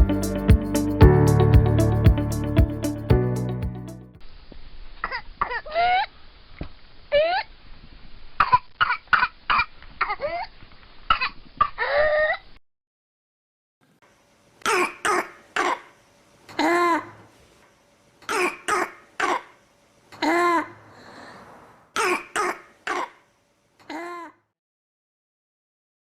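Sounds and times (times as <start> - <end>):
whooping coughs: 14.6 - 15.9, 18.3 - 19.6, 22.0 - 23.2
barking coughs: 14.7 - 15.9, 18.3 - 19.5, 22.0 - 23.2.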